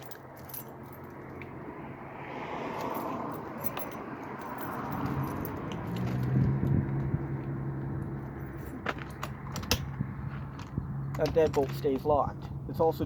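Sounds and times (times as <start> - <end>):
metal rattling in a lock: 3.0 - 6.5, 8.4 - 12.6.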